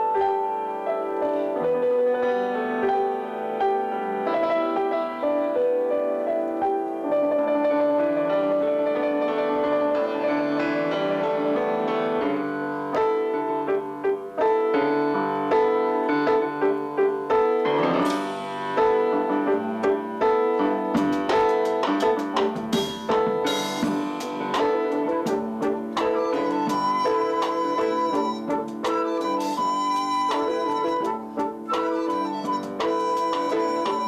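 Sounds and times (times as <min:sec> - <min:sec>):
piano playing: 0:00.0 - 0:34.0
drum kit: 0:16.4 - 0:34.0.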